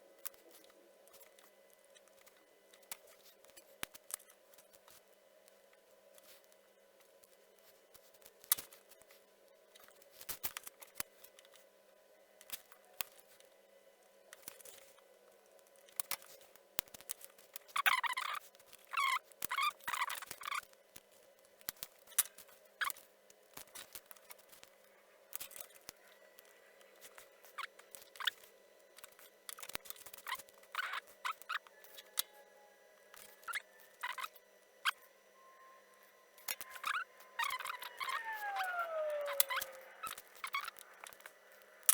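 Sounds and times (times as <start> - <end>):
short squeaks: 33.2 - 41.3.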